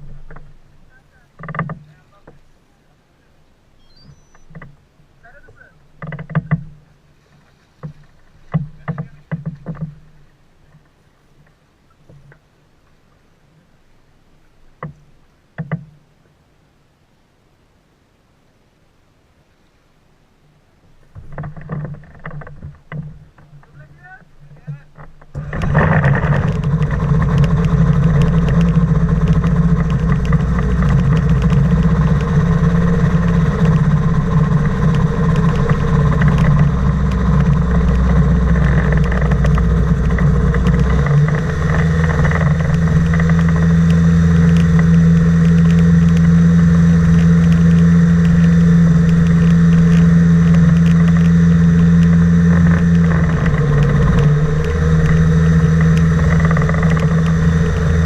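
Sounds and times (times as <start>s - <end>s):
boat engine running loud: 25.3s - 58.0s.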